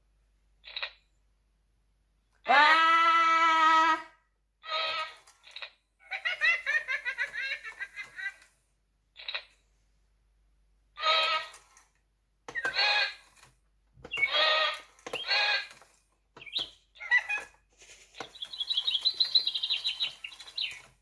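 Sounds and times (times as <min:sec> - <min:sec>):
toy bird calls through speaker: 0:11.0 - 0:11.7, 0:14.1 - 0:15.8.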